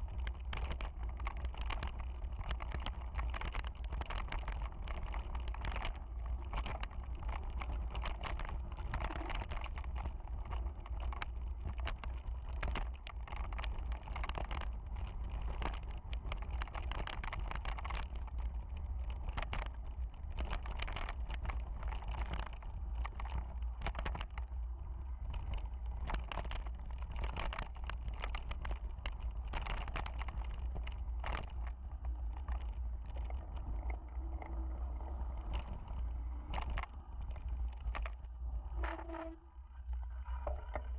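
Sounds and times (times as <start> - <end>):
sharp ticks and clicks: 0.0 - 24.6, 25.2 - 39.2
wind rumble on microphone: 0.0 - 40.9.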